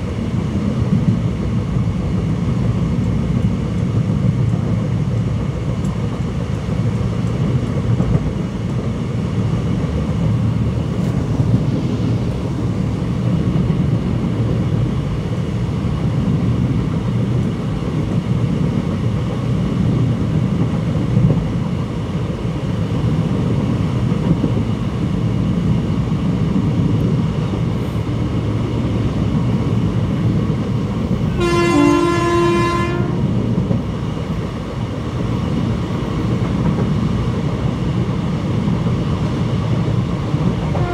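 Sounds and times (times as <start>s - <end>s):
train coaches rumbling on track: 0.0s - 40.9s
locomotive horn blast: 31.3s - 33.3s, 40.6s - 40.9s.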